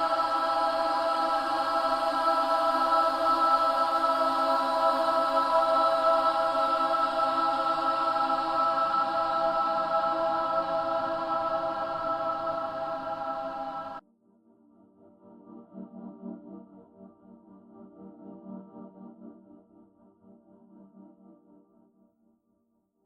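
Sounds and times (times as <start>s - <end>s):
synthesized choir pad: 0.0s - 14.0s.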